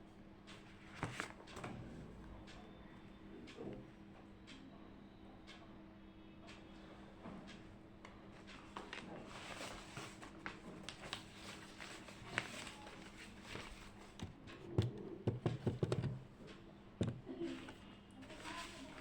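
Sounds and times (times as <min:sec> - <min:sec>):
faint steady hum: 0:00.0 - 0:19.0
light taps and clicks: 0:13.5 - 0:17.8
knocks and thumps: 0:14.2 - 0:16.3.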